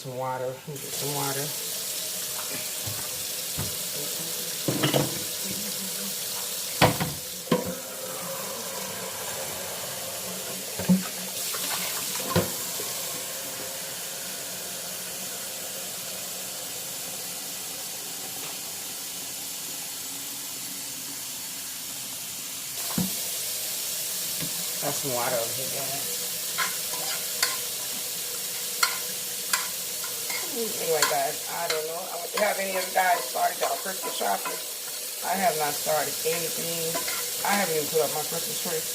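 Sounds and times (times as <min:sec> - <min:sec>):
cookware knocking in sink: 0:04.6 - 0:05.3.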